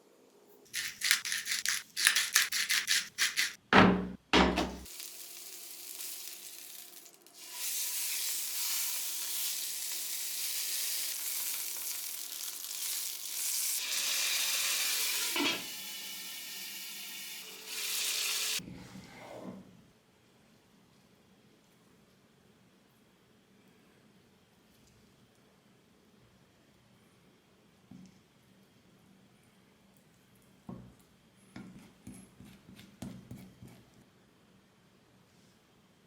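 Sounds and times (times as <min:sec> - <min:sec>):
food sizzling in hot oil: 0:04.8 - 0:18.6.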